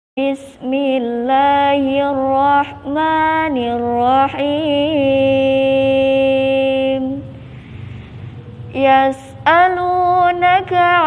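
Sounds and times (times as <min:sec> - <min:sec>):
woman chanting melodically: 0:00.2 - 0:07.4, 0:08.6 - 0:11.0
woman breathing in: 0:07.4 - 0:08.4.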